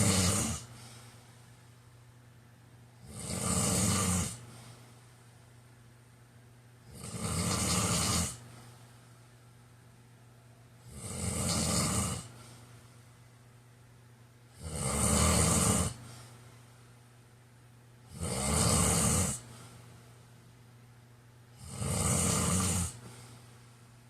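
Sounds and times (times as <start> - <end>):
man snoring: 0.0 - 0.8, 3.0 - 4.5, 6.9 - 8.4, 10.8 - 12.4, 14.5 - 16.0, 18.1 - 19.5, 21.5 - 23.1.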